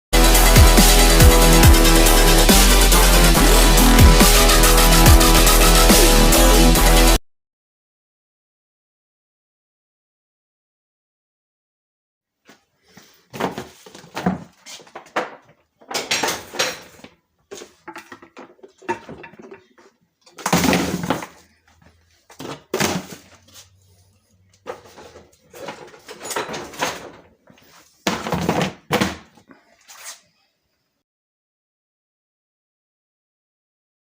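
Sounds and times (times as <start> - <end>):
objects knocking and clattering: 13.3 - 21.5, 22.3 - 23.3, 24.6 - 29.6.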